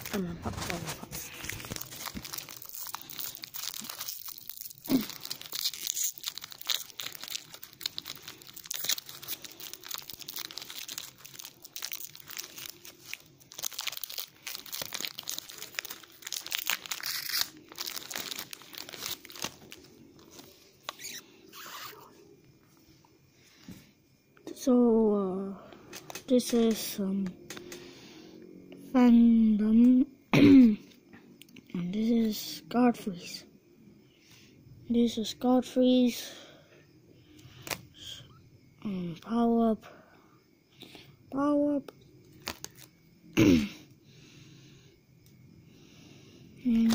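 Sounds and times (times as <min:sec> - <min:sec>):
card pack wrapper crinkling: 0:00.0 - 0:21.2, 0:42.3 - 0:42.9
sharp wrapper crack: 0:01.5 - 0:21.9, 0:37.6 - 0:37.9, 0:42.3 - 0:42.9.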